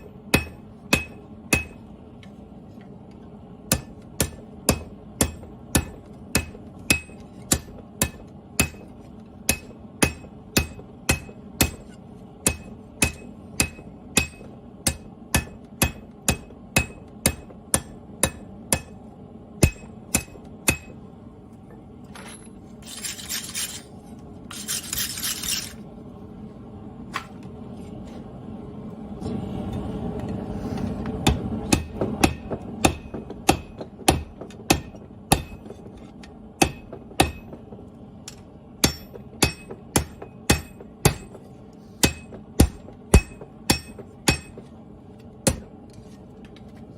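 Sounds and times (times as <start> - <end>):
hammer striking metal on anvil: 0.3 - 1.8, 3.7 - 8.9, 9.5 - 19.0, 19.6 - 21.0, 31.2 - 35.8, 36.6 - 37.6, 38.3 - 41.4, 42.0 - 44.7, 45.5 - 45.7.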